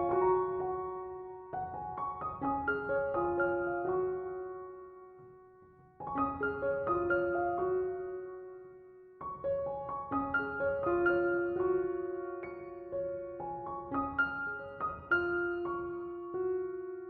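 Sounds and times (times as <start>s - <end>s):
gentle slow piano music: 0.0s - 17.0s.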